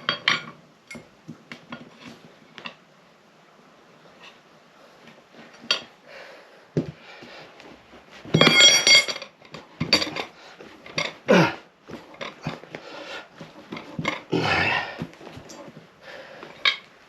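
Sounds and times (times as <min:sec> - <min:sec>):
metal tyre levers clinking on rim: 0:08.3 - 0:11.2.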